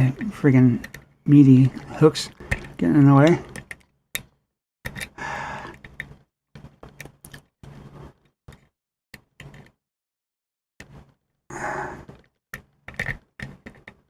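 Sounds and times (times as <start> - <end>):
lock pick clicking on pins: 2.5 - 6.1.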